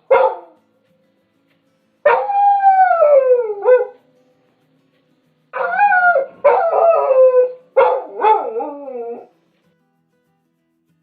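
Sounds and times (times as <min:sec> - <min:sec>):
dog howling: 0:02.1 - 0:04.0, 0:05.6 - 0:09.3.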